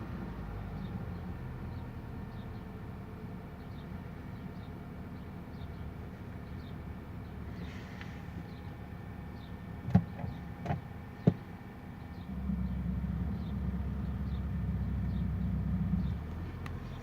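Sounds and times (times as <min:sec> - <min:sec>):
car engine running: 0:00.8 - 0:17.0
sharp knocks: 0:09.9 - 0:11.4.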